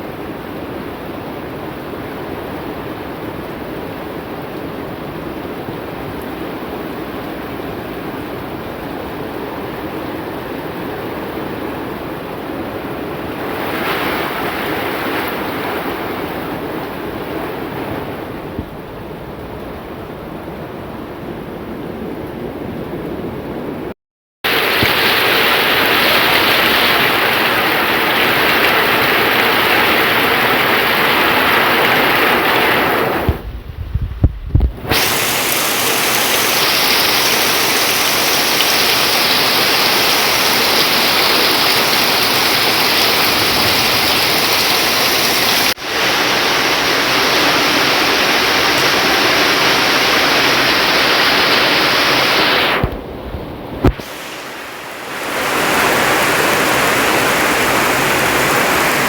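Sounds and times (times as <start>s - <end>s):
heavy rain falling: 4.0s - 18.4s, 24.4s - 33.5s, 34.7s - 53.1s, 53.8s - 59.0s.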